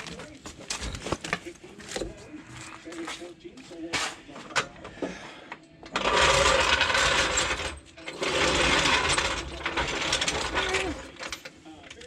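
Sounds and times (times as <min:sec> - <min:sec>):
dense metallic rattling: 0:06.0 - 0:12.0.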